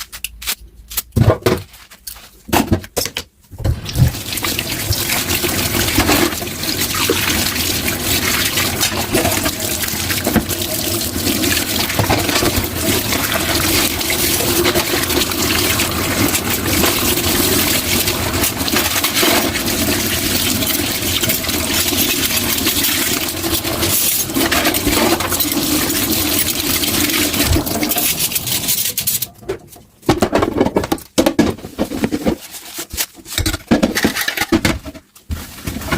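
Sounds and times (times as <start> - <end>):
water running from tap into sink: 3.7 - 29.2.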